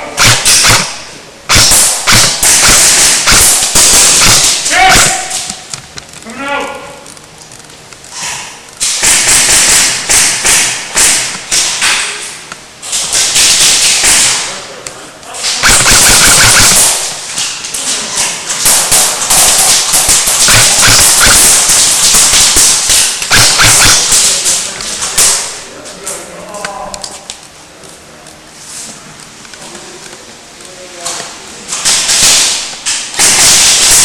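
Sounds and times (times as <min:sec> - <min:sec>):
airsoft rifle snapping shots: 0:00.2 - 0:05.6, 0:08.8 - 0:12.1, 0:12.9 - 0:14.5, 0:15.5 - 0:17.5, 0:18.6 - 0:25.6, 0:31.8 - 0:34.0.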